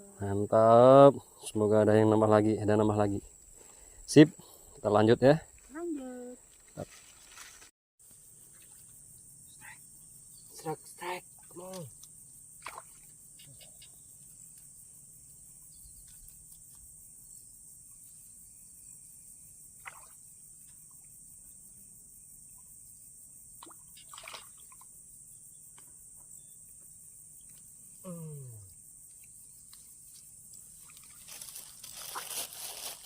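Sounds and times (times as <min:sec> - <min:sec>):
insects buzzing: 0:00.0 - 0:33.0.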